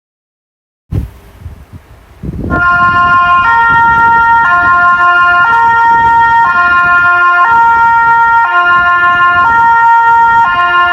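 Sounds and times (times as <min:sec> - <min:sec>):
low rumbling noise: 0:00.9 - 0:09.4
siren steady tone: 0:02.4 - 0:10.9.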